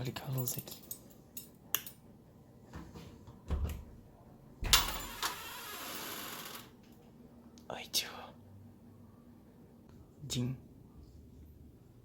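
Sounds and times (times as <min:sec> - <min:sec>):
door opening with clunk and scraping: 0:02.8 - 0:06.7.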